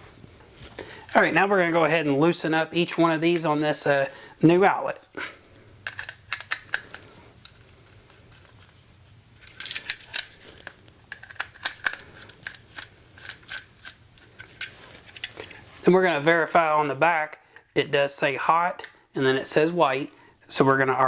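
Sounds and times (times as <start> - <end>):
screwdriver clicking and scraping: 5.8 - 8.8, 9.4 - 15.6.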